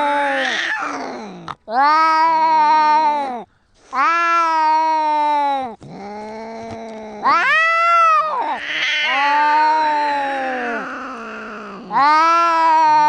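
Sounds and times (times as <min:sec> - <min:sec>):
cat moaning growl: 0:00.0 - 0:13.0
cats yowling: 0:00.0 - 0:13.0
cat hissing: 0:05.7 - 0:13.0.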